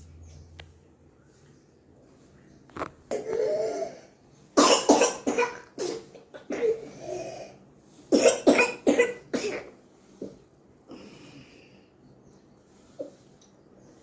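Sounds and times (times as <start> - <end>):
person coughing harshly: 4.6 - 7.4, 8.1 - 9.8.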